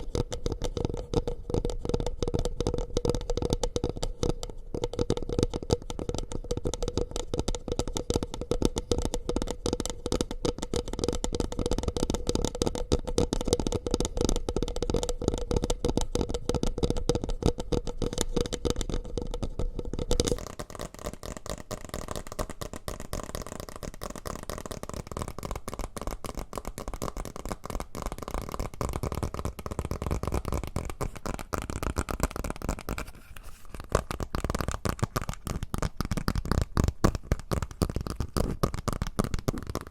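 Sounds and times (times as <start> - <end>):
soft rustling: 32.9 - 34.0.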